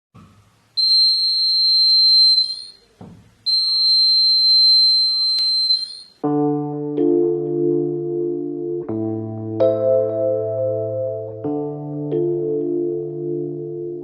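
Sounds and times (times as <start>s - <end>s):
high-pitched door alarm buzzer: 0.8s - 2.8s, 3.5s - 6.2s.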